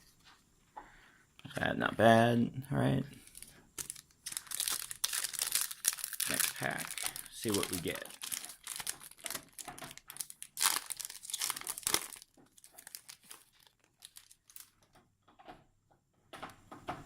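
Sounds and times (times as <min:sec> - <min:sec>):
cards rustling and clicking: 0:03.2 - 0:15.0
foil pack tearing and crinkling: 0:03.3 - 0:14.8.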